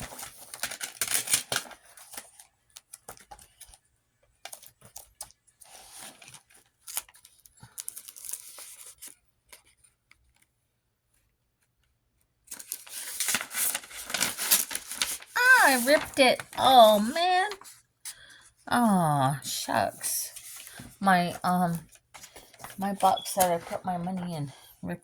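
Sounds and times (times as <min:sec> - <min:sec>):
paper rustling: 0:00.0 - 0:03.8, 0:04.5 - 0:10.5, 0:12.5 - 0:18.3, 0:19.9 - 0:24.7
paper box tearing: 0:12.5 - 0:16.6.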